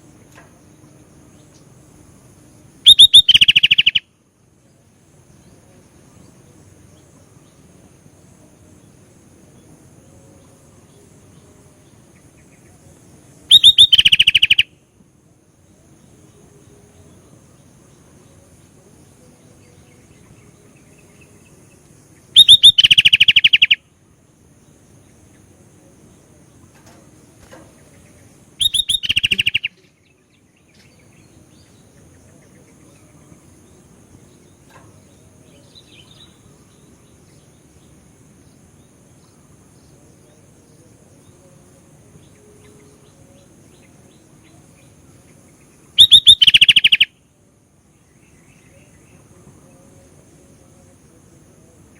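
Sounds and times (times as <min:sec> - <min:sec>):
bird singing fast repeated notes: 0:02.8 - 0:04.2, 0:13.5 - 0:14.8, 0:21.2 - 0:23.9, 0:27.9 - 0:32.8, 0:45.5 - 0:47.2.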